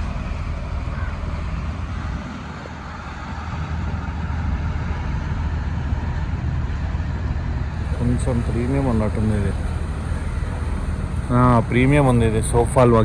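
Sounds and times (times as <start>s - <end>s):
boat engine rumbling: 0.0s - 13.0s.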